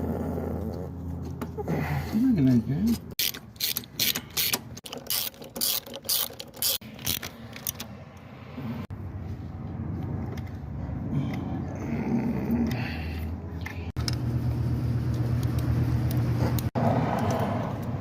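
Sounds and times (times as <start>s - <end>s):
clicks and scrapes on engine parts: 2.8s - 8.3s, 9.6s - 11.4s.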